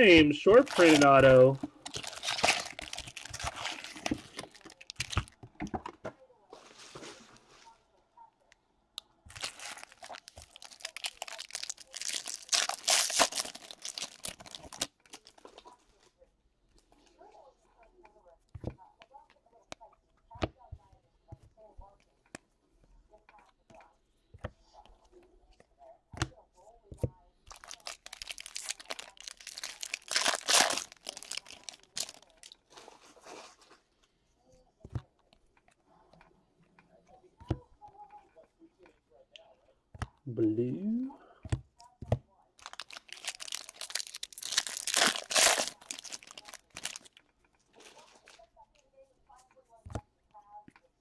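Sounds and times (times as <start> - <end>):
foil wrapper crinkling: 0.0 - 5.4, 9.3 - 15.8, 27.5 - 33.0, 42.6 - 48.5.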